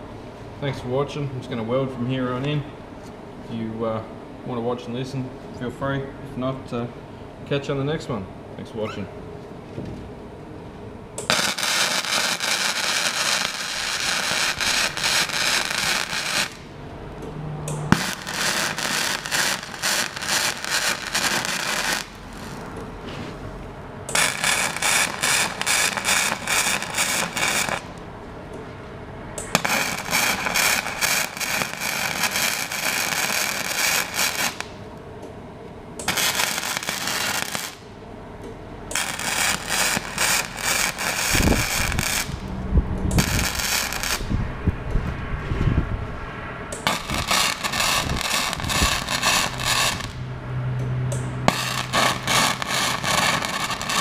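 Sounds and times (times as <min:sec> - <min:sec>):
welder arc crackling: 0:11.2 - 0:22.9, 0:24.1 - 0:28.1, 0:29.4 - 0:35.0, 0:36.0 - 0:38.0, 0:38.9 - 0:45.0, 0:46.7 - 0:50.2, 0:51.1 - 0:54.0.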